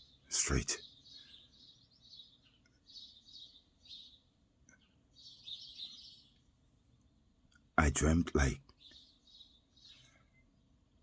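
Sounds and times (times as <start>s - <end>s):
bird chirping and twittering: 0.0s - 6.5s, 8.7s - 10.7s.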